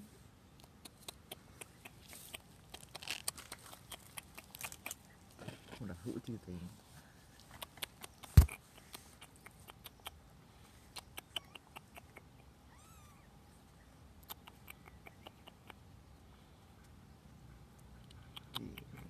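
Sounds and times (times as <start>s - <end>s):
kitten mewing: 11.0s - 13.3s.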